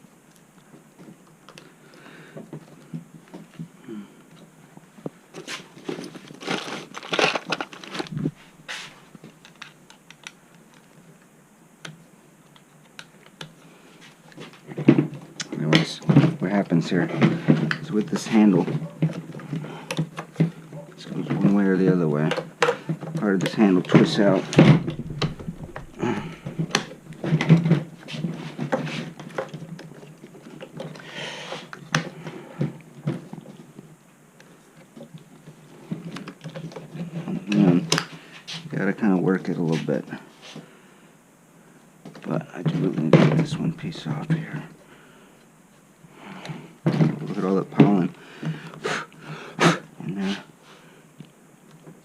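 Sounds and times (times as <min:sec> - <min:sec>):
rustling and crinkling: 0:00.0 - 0:11.3, 0:11.9 - 0:40.8
hard plastic parts clicking and rattling: 0:05.3 - 0:08.4, 0:14.3 - 0:31.0
small clicks and knocks: 0:09.2 - 0:13.6.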